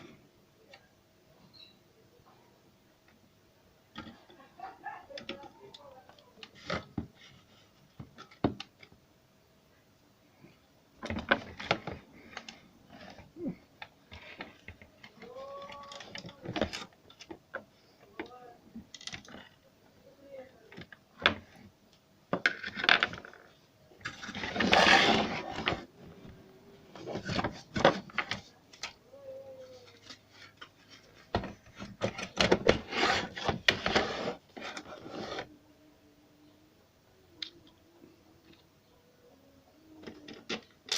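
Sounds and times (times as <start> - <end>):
small parts clicking and rattling: 14.1 - 17.4
scraping and rustling: 22.4 - 35.6.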